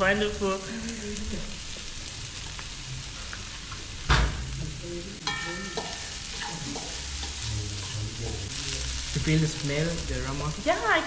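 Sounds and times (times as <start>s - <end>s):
chicken sizzling in a pan: 0.0s - 11.0s
utensil knocking on pan: 5.2s - 6.1s
ringing clink: 5.3s - 6.1s.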